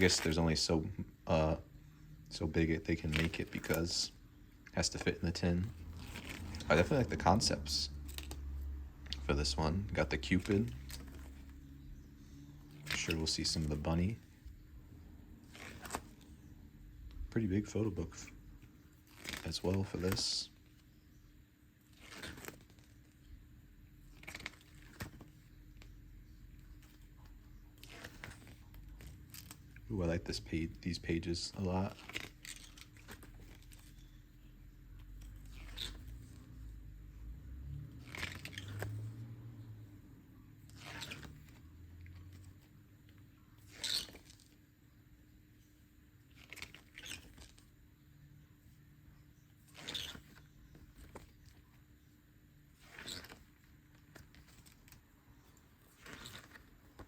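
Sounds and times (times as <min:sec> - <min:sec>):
faint low hum: 0:00.0 - 0:57.0
paper pages turning: 0:02.5 - 0:04.1, 0:04.8 - 0:14.6, 0:15.4 - 0:16.5, 0:17.4 - 0:20.8, 0:21.9 - 0:23.2, 0:24.0 - 0:36.5, 0:38.0 - 0:39.7, 0:40.6 - 0:42.7, 0:43.6 - 0:44.6, 0:46.2 - 0:47.8, 0:49.6 - 0:52.0, 0:52.7 - 0:57.0.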